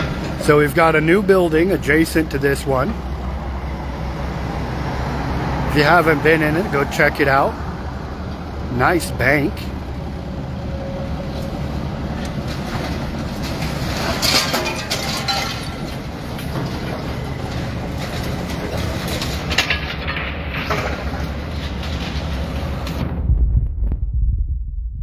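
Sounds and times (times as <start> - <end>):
debris knocking and clanking: 0.0 - 3.2, 11.3 - 23.1
demolition machinery running: 0.0 - 24.0
low rumble: 22.8 - 25.0.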